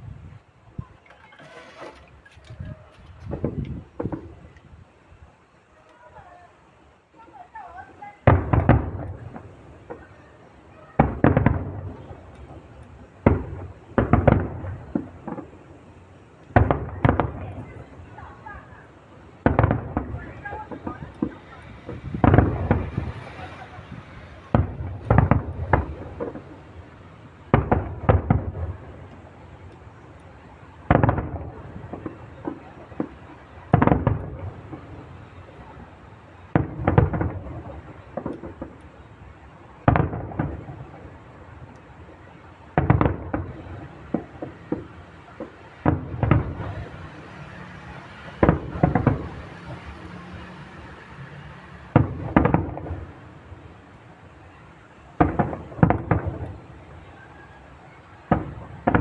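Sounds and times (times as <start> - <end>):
fireworks shells bursting: 1.0 - 4.5, 19.1 - 35.8, 42.8 - 53.4.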